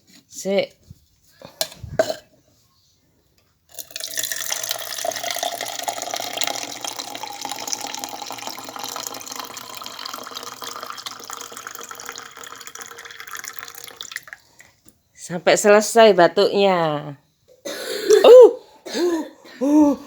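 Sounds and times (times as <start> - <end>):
water pouring into a vessel: 3.7 - 14.7.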